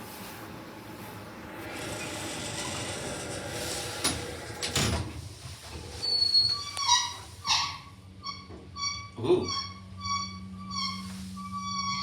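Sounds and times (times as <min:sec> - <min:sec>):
high electronic beep: 0:08.3 - 0:10.9.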